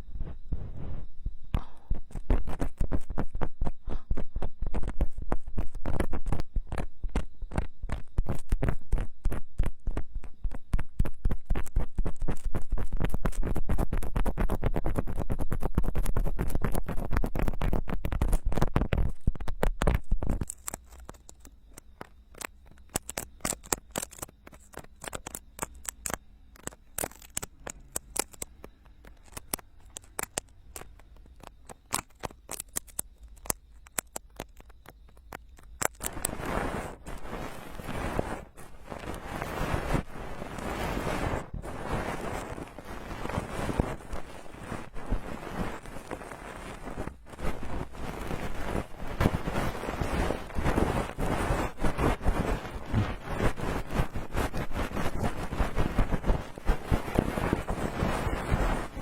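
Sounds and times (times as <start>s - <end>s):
tools scraping microphone ears: 35.0s - 59.0s.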